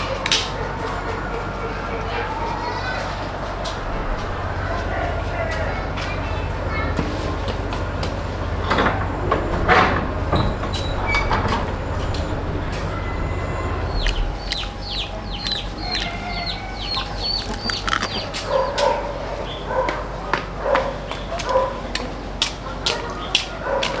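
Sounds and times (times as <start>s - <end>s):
chickens clucking: 9.4s - 19.1s.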